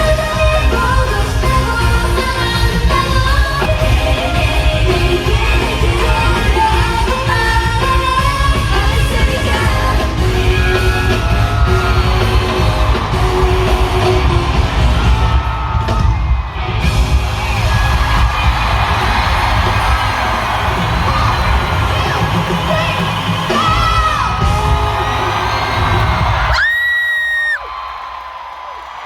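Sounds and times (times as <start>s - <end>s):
person singing: 0.0s - 15.2s
pop backing track heavy bass: 0.0s - 26.7s
crowd yelling: 0.0s - 29.0s.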